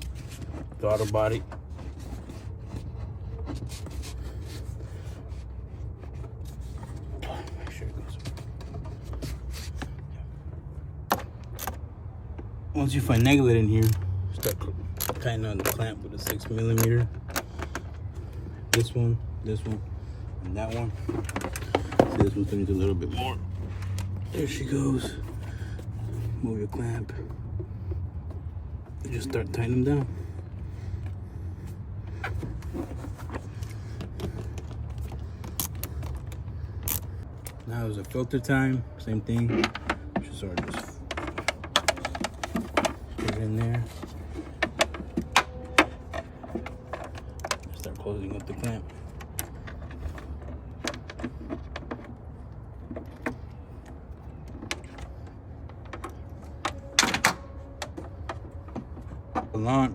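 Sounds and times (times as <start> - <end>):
tool clicking and knocking on parts: 13.1 - 18.0, 39.4 - 52.2.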